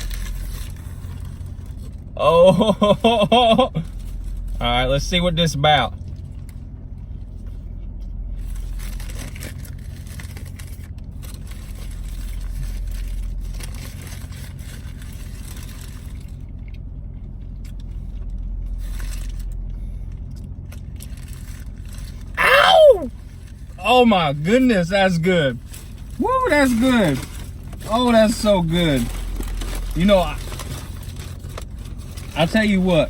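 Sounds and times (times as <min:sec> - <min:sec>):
car engine idling: 0:00.0 - 0:33.0
paper wrapper rustling: 0:25.6 - 0:33.0.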